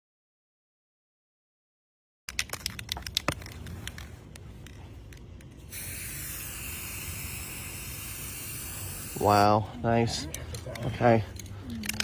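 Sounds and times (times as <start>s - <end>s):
spray can hissing: 5.6s - 9.6s.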